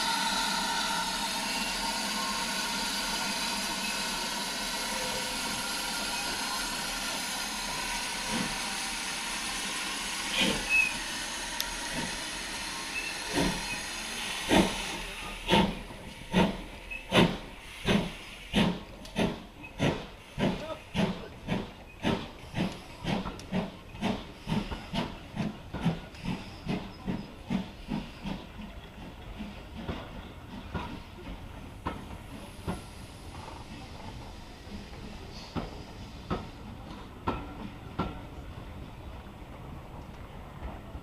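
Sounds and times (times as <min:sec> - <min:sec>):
steam hissing: 0:00.0 - 0:28.6
steam locomotive exhaust beats: 0:00.0 - 0:38.5.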